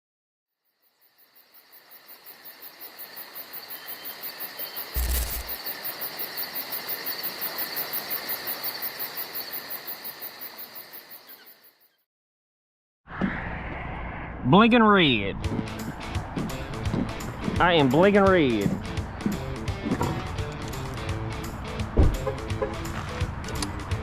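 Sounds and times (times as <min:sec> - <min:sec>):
insects chirring: 0:00.6 - 0:12.0.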